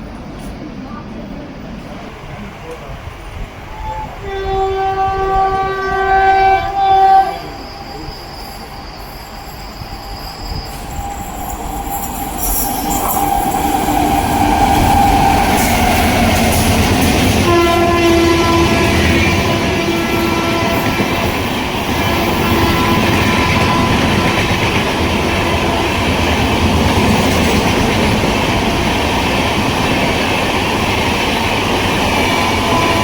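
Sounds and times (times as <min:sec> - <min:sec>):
train rushing rumble: 0:00.0 - 0:33.0
train horn chord: 0:03.8 - 0:07.6, 0:17.3 - 0:21.3, 0:21.9 - 0:24.7, 0:32.4 - 0:33.0.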